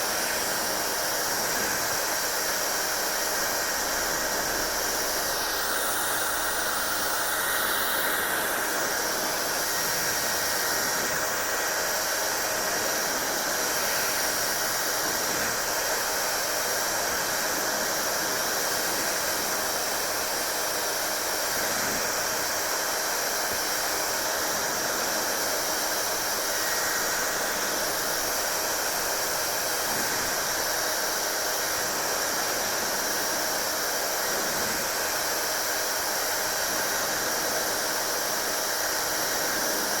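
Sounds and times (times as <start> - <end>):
hair dryer running: 0.0 - 40.0.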